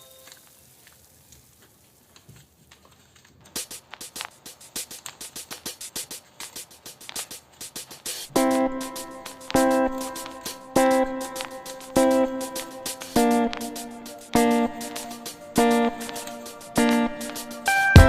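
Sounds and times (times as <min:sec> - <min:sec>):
ticking percussion beat: 0:03.5 - 0:18.0
guitar chords: 0:08.3 - 0:18.0.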